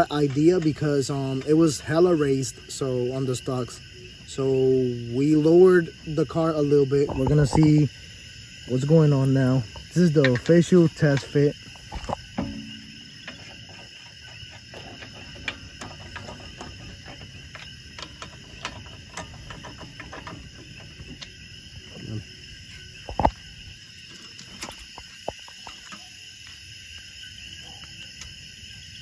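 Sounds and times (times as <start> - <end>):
night insects chirring: 0.0 - 29.0
light clicks and knocks: 9.7 - 14.0.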